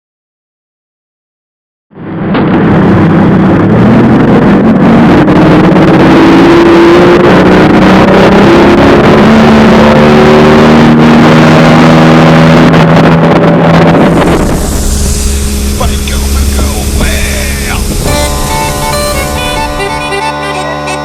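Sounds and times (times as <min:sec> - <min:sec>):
rushing water noise: 0:13.9 - 0:20.3
outboard motor running: 0:13.9 - 0:21.0.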